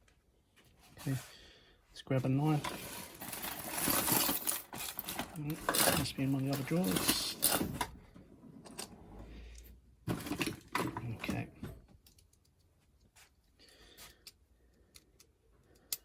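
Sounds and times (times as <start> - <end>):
metal tools clattering in drawer: 2.4 - 8.0, 8.6 - 9.0, 10.1 - 11.8.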